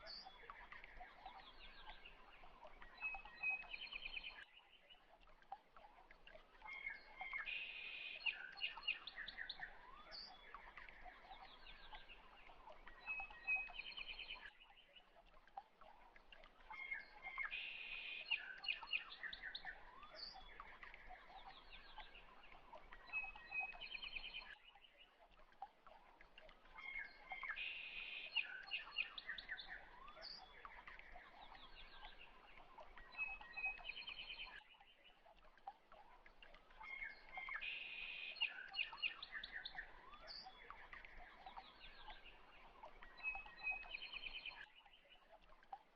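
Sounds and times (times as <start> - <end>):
birds chirping and trilling: 36.7 - 45.2.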